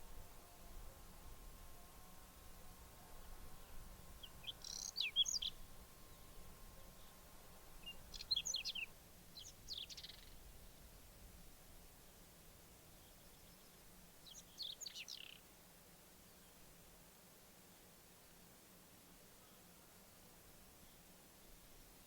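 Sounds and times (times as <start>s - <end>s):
songbird singing high jumbled notes: 4.2s - 7.2s, 7.8s - 10.4s, 12.9s - 15.5s.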